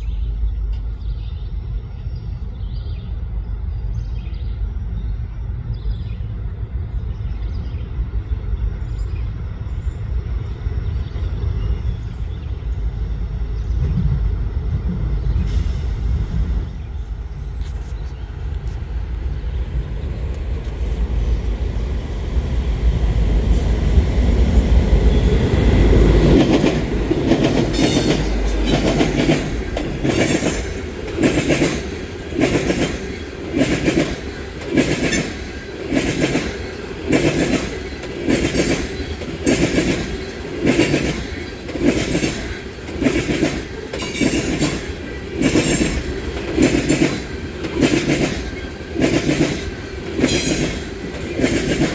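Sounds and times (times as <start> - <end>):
diesel locomotive rumble: 0.0 - 51.9
train wheels clacking over rail joints: 23.2 - 51.9.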